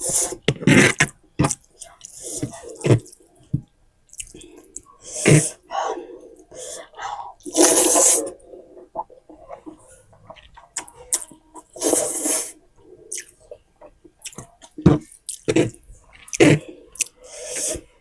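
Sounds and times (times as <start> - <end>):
chewing: 4.1 - 4.9, 13.1 - 17.2
noodle slurping: 7.4 - 9.0.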